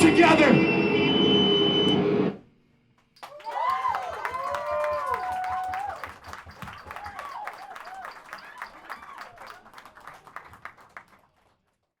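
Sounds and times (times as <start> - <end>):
audience clapping and cheering: 3.2 - 12.0.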